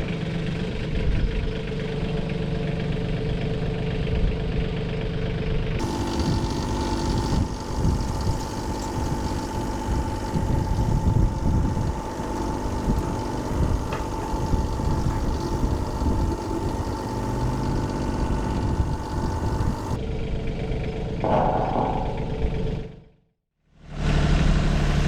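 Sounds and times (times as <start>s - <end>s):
mid-pitched whine: 5.8s - 20.0s, 21.2s - 23.0s
tractor engine rumble: 5.8s - 20.0s.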